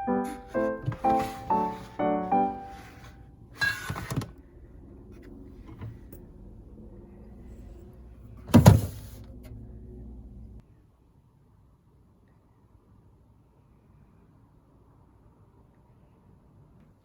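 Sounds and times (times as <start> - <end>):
musical note: 0.0 - 3.5
low steady hum: 0.0 - 17.0.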